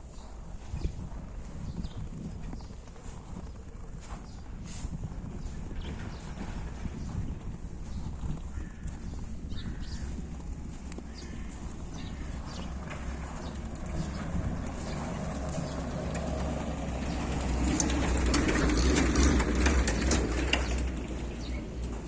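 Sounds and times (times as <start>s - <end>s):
footsteps walking: 0.0s - 22.0s
low rumble: 4.4s - 22.0s.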